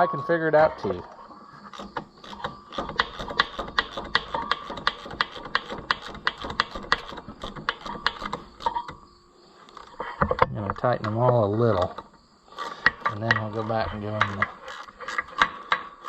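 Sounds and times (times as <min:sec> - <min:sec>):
ratchet wrench clicking: 0:01.7 - 0:09.0.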